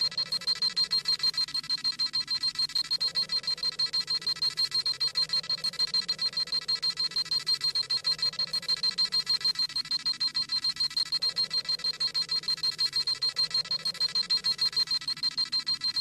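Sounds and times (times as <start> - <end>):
rapid electronic beeping: 0.0 - 16.0.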